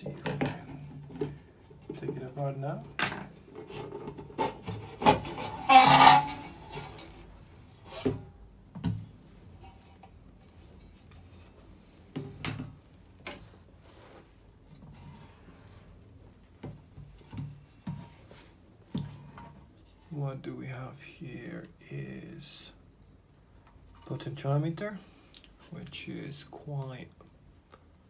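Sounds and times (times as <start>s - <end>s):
loud scraping rub: 4.4s - 7.2s.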